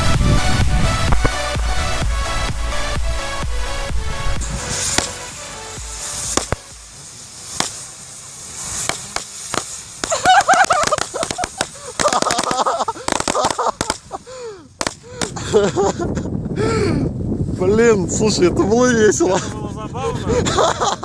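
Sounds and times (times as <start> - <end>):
firework spinners popping and cracking: 0.0 - 15.9
warbling and falling whistles: 7.6 - 14.2.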